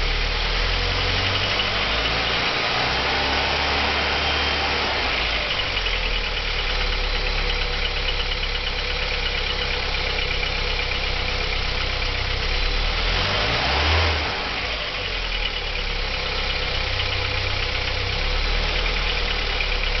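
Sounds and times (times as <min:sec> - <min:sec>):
car engine idling with knock: 0:05.3 - 0:12.7, 0:14.8 - 0:20.0.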